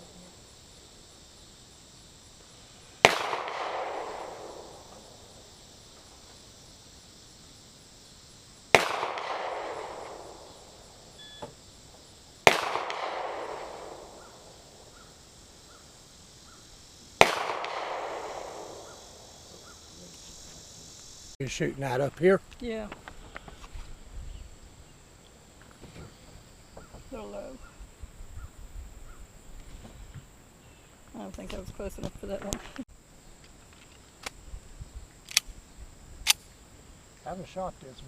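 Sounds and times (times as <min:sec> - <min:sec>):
handgun shots echoing: 0:03.0 - 0:04.6, 0:08.8 - 0:10.4, 0:12.5 - 0:14.2, 0:17.2 - 0:18.9.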